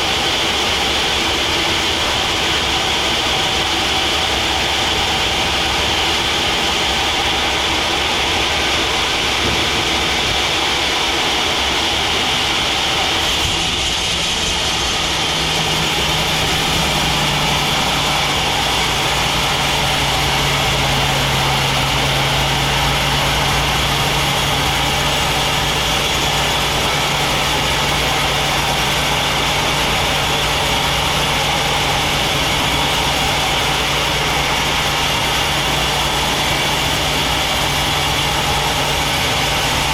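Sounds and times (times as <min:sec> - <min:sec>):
bandsaw machinery whining: 0:00.0 - 0:39.9.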